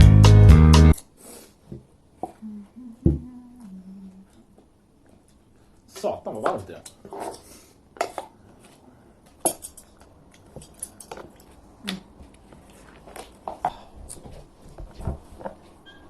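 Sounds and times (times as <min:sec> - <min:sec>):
cutlery and dishes clinking: 0:09.4 - 0:11.5.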